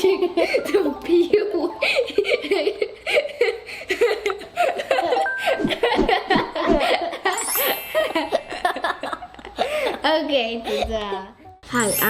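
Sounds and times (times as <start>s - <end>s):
children laughing and giggling: 0.0s - 11.4s.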